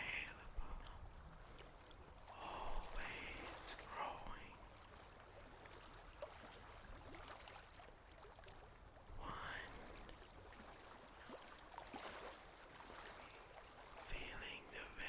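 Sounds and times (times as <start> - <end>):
whisper-like breath: 0.0 - 1.0, 2.4 - 4.6, 9.2 - 9.9, 14.1 - 15.0
low trickling water hiss: 0.0 - 15.0.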